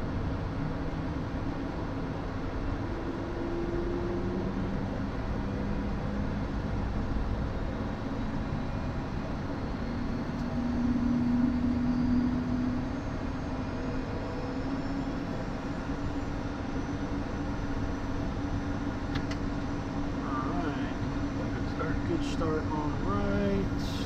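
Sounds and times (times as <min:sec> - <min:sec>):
jet engine spooling up: 0:08.1 - 0:24.0.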